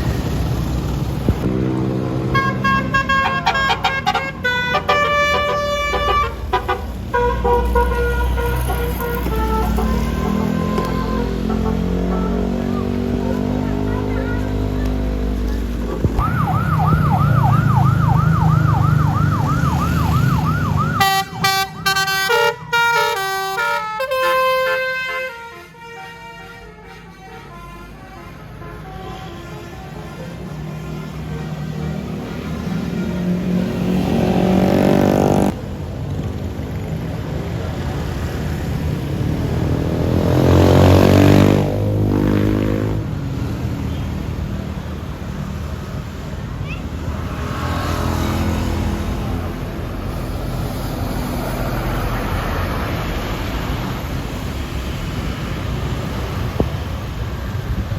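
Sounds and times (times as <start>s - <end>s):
bus engine rumble: 0.0s - 57.9s
multi-tone horn melody: 1.5s - 15.2s, 20.6s - 34.2s.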